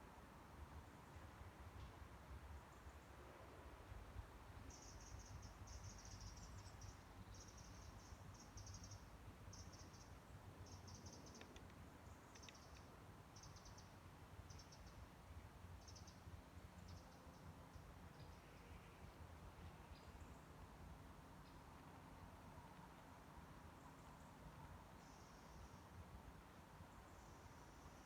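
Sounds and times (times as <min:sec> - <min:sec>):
insect chirping: 0:04.7 - 0:11.5, 0:13.4 - 0:14.9
soft clicks: 0:11.2 - 0:12.9.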